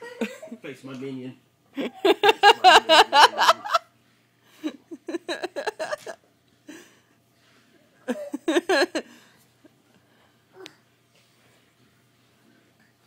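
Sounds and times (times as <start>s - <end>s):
child laughing and giggling: 5.2s - 6.2s.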